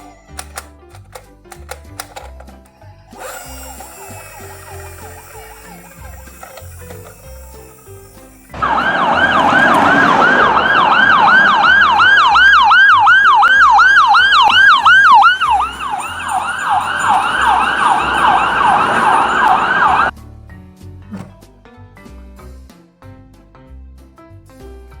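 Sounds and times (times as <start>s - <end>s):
toy electronic siren: 2.6s - 20.1s.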